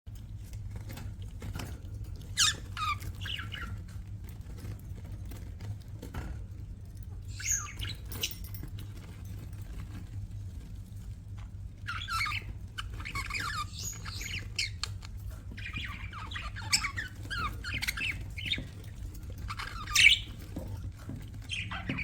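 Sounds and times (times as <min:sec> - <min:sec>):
budgerigars chirping: 0:02.4 - 0:03.8, 0:07.3 - 0:08.3, 0:11.9 - 0:20.6, 0:21.4 - 0:22.0.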